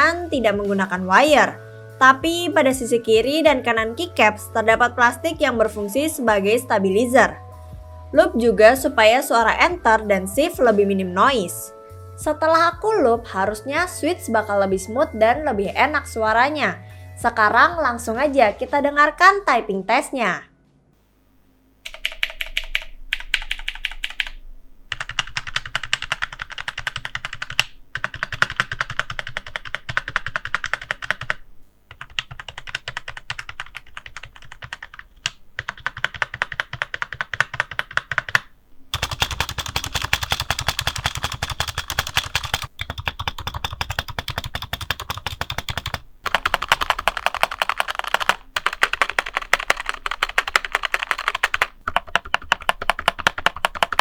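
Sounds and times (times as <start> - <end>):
fast keyboard typing clicks: 21.9 - 54.0.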